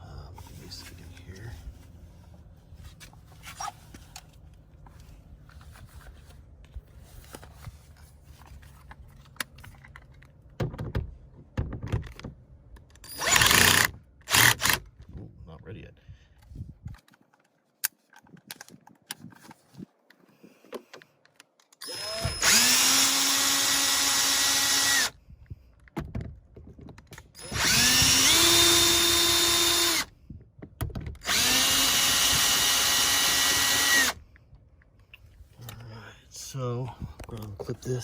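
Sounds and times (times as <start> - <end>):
power drill whining: 13.1 - 14.8, 21.8 - 25.2, 27.4 - 30.1, 31.2 - 34.2.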